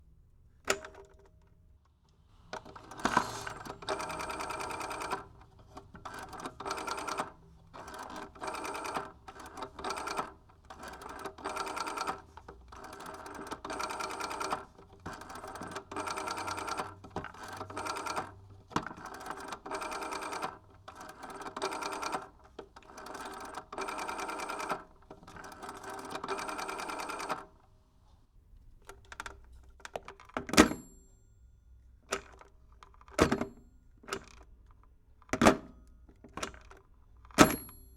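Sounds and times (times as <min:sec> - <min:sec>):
telephone rotary dial whirring: 0:02.4 - 0:27.6.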